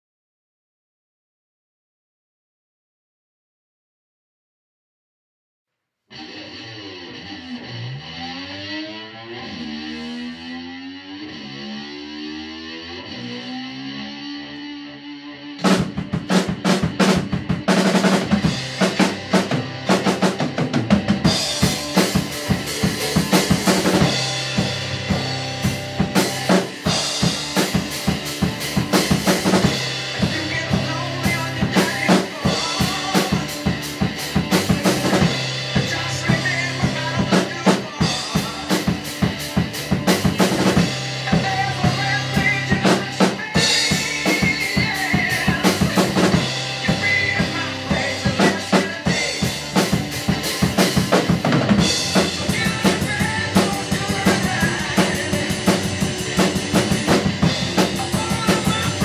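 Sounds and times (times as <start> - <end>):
rock band playing: 6.1 - 59.0
snare and bass drum strokes: 15.6 - 30.6, 37.3 - 59.0.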